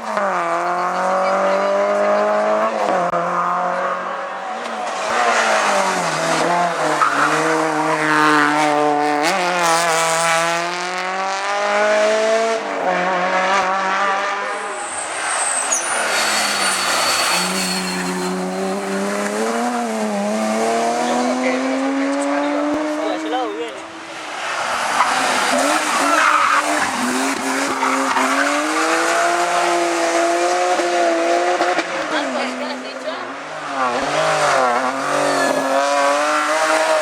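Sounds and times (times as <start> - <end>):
race car engine at full throttle: 0.0 - 37.0
tyre squeal: 14.5 - 19.7, 24.6 - 29.8.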